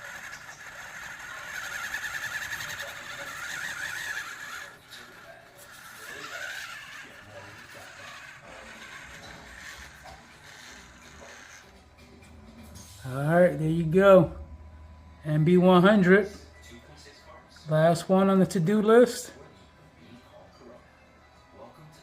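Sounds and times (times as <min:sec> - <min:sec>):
small motor and gears whining: 0:00.0 - 0:13.3.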